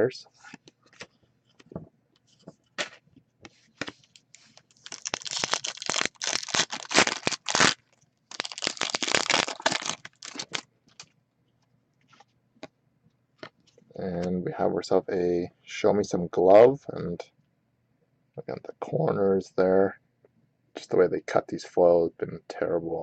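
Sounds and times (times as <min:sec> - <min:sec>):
foil wrapper tearing and crinkling: 0:04.6 - 0:11.1.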